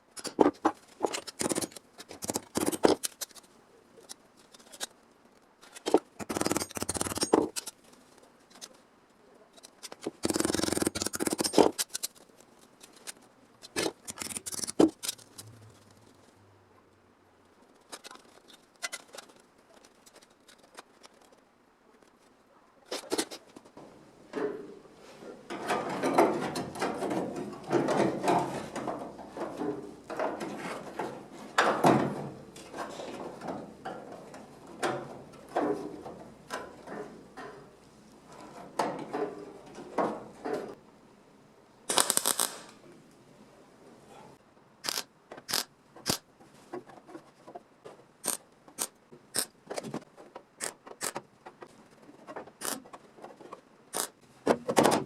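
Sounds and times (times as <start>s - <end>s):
sharp clicks: 41.9s - 42.8s, 44.8s - 46.2s.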